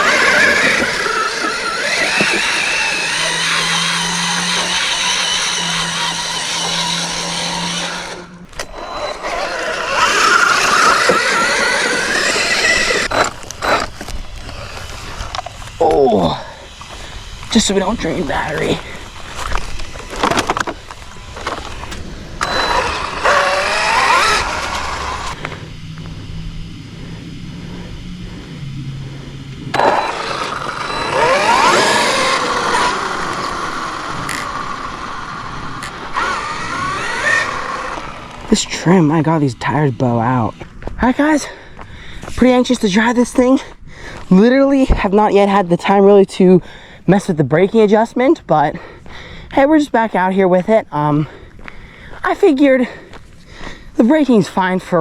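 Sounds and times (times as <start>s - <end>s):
electric motor whining: 0.0s - 43.6s.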